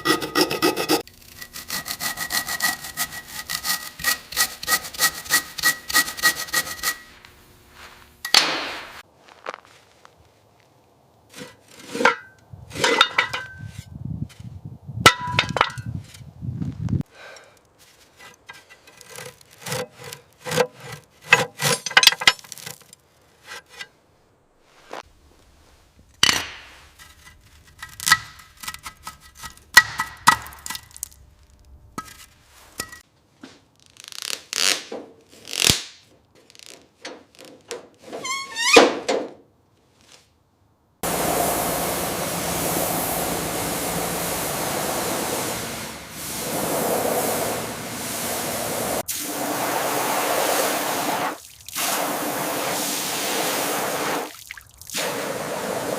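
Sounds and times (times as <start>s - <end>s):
hand tool scraping: 0.0s - 9.0s, 11.3s - 16.3s, 17.7s - 24.0s, 26.2s - 31.2s, 32.0s - 33.0s.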